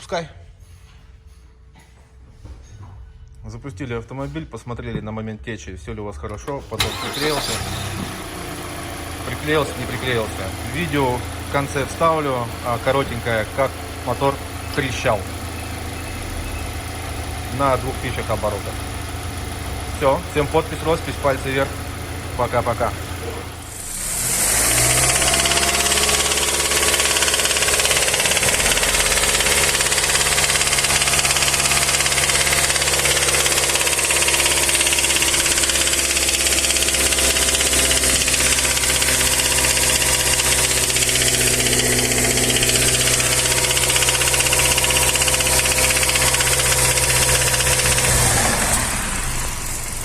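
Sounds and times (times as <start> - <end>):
petrol engine running: 6.6 - 50.0
engine rattling knock: 7.8 - 50.0.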